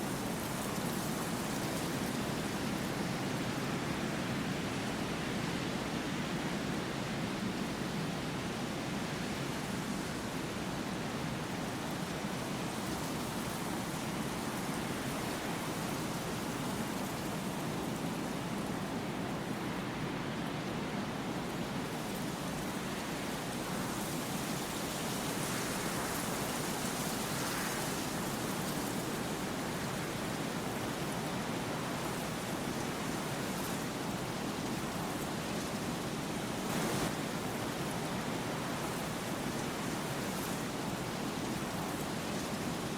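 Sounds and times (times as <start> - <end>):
steady rushing noise: 36.7 - 37.2.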